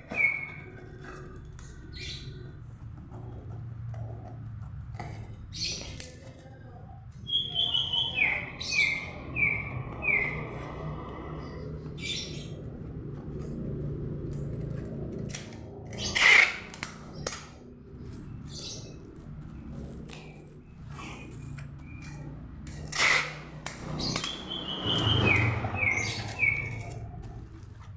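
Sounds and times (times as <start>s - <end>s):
bird chirping: 7.2s - 10.7s, 23.8s - 27.1s
handling noise rasp: 19.7s - 27.9s.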